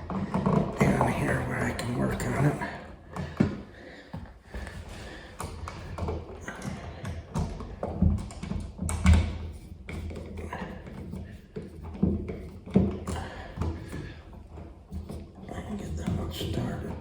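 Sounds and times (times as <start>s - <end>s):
tools tapping and clicking: 5.4s - 15.4s.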